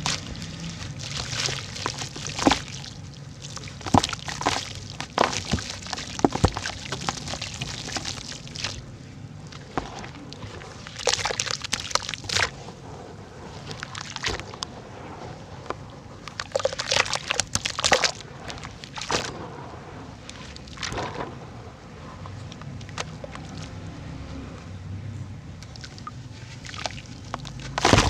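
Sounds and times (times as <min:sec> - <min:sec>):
dirt crackling and breaking: 0:00.0 - 0:08.8, 0:26.8 - 0:28.0
water sloshing: 0:00.0 - 0:24.6, 0:25.6 - 0:28.0.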